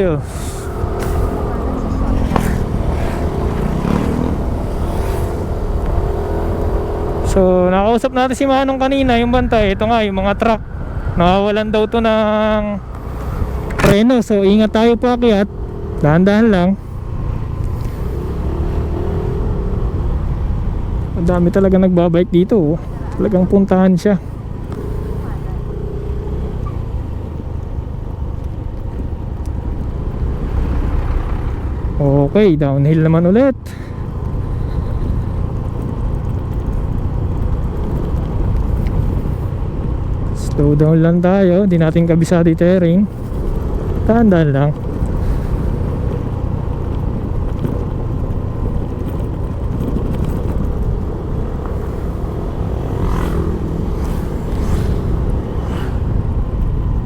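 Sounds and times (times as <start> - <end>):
scooter engine running: 0.0 - 8.5, 12.8 - 21.5, 22.6 - 32.4, 33.7 - 57.0
wind rumble on microphone: 0.0 - 32.7, 33.7 - 57.0.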